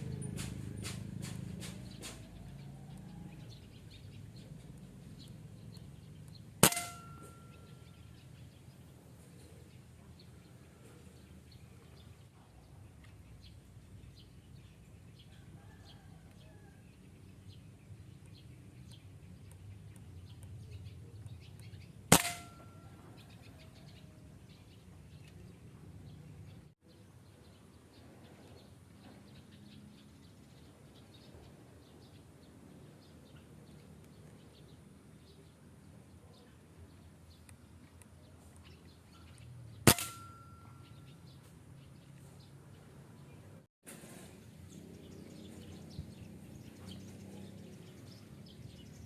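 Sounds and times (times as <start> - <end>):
small birds chirping: 0.0 - 49.0
sharp gunshot: 6.6 - 7.3, 22.1 - 22.7, 39.9 - 40.4.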